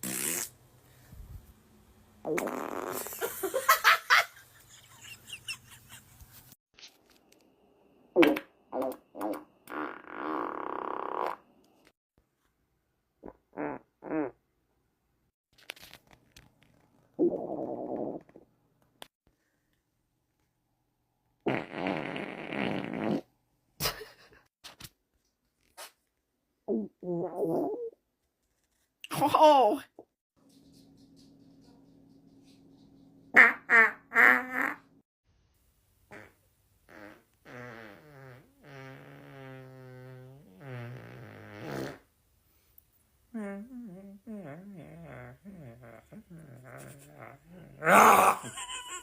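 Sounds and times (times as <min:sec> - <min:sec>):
person farting: 0:00.0 - 0:00.6, 0:02.2 - 0:03.3, 0:08.2 - 0:11.5, 0:13.2 - 0:14.4, 0:17.1 - 0:18.5, 0:21.4 - 0:23.3, 0:26.7 - 0:28.0, 0:33.4 - 0:34.9, 0:36.1 - 0:42.1, 0:43.4 - 0:48.6.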